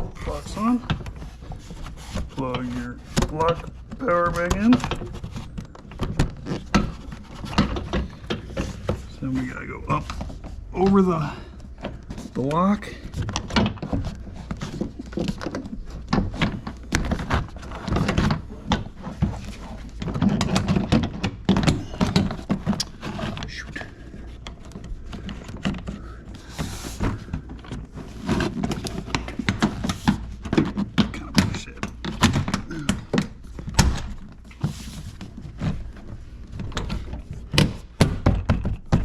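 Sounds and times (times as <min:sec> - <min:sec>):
plastic knocks and clicks: 0:36.5 - 0:39.0.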